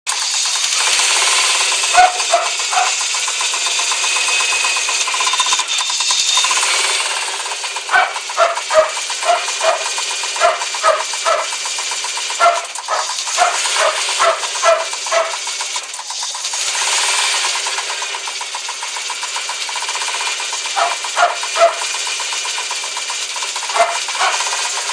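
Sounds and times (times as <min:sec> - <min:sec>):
car engine with ticking lifters: 0:00.1 - 0:24.9
dog barking short yaps: 0:02.0 - 0:03.0, 0:07.9 - 0:11.6, 0:12.4 - 0:15.4, 0:20.8 - 0:21.9, 0:23.8 - 0:24.5.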